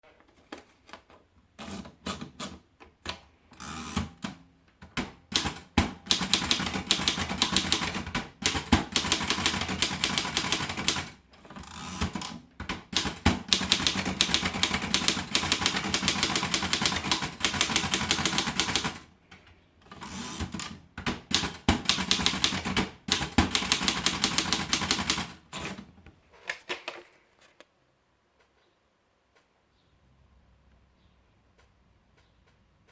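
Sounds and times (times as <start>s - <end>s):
manual typewriter keystrokes: 1.6s - 25.9s.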